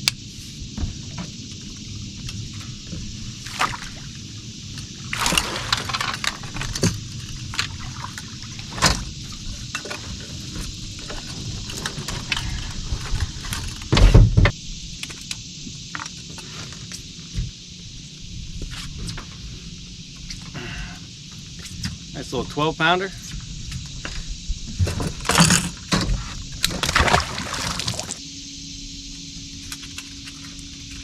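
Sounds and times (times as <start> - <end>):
water splashing and sloshing: 2.5 - 13.8, 24.9 - 28.2.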